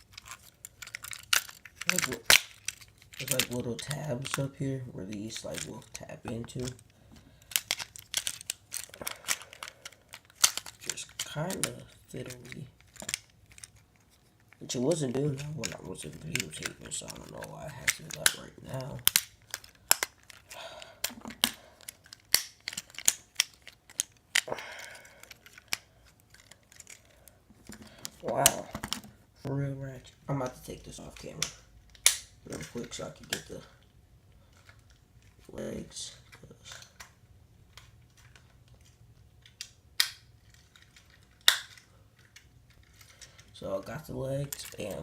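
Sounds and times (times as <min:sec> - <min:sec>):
handling rustle: 0:00.0 - 0:33.8, 0:40.4 - 0:45.0
sharp plastic clicks and snaps: 0:15.3 - 0:29.0, 0:30.4 - 0:33.7, 0:36.3 - 0:43.5.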